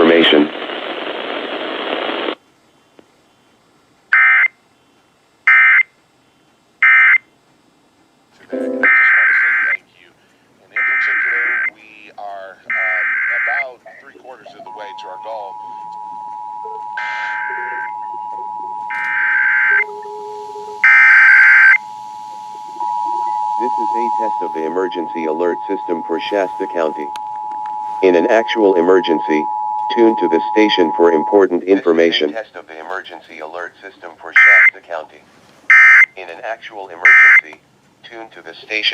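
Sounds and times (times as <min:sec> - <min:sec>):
steady hiss: 0:00.0 - 0:16.0, 0:18.8 - 0:38.9
two-tone attention signal: 0:08.5 - 0:09.7, 0:14.4 - 0:32.3
warbling digital data squawk: 0:08.5 - 0:09.8, 0:12.7 - 0:27.2.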